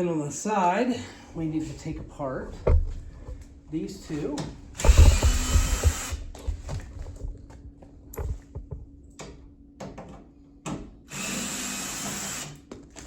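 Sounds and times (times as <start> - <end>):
power drill running: 4.8 - 6.3, 11.1 - 12.6.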